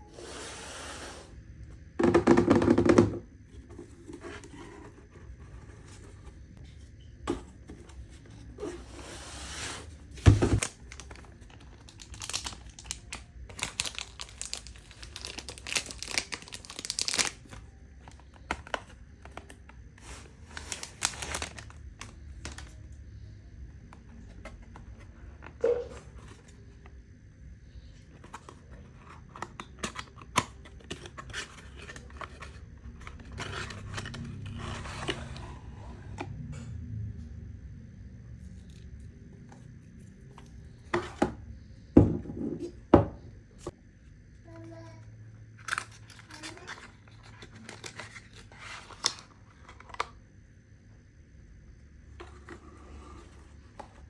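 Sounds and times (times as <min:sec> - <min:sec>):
packaging ripping: 0:10.6 - 0:17.6, 0:20.5 - 0:22.7
crinkling of wrapping: 0:10.6 - 0:22.8.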